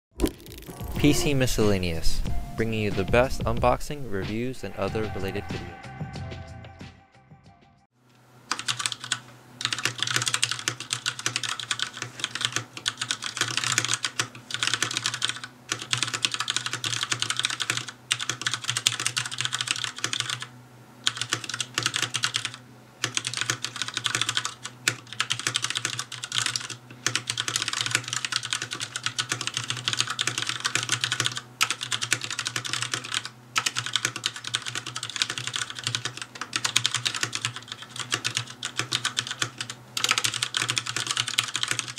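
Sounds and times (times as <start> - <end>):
typing on mechanical keyboard: 8.5 - 41.9.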